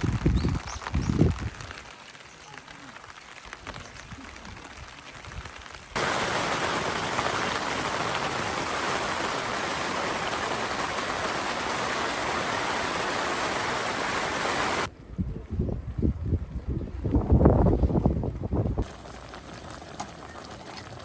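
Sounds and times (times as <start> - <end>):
heavy rain falling: 0.0 - 14.9.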